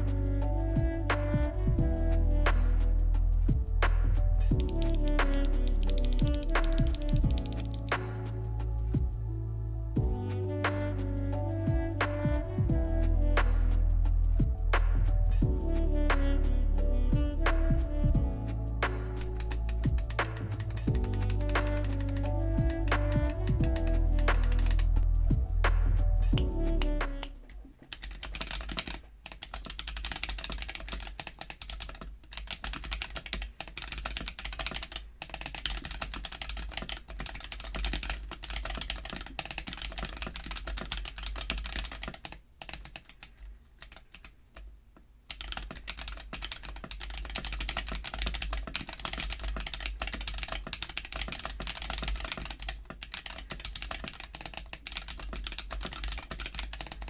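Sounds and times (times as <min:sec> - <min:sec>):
typing on mechanical keyboard: 0:04.6 - 0:08.2, 0:19.2 - 0:24.9, 0:27.9 - 0:44.7, 0:45.3 - 0:57.0.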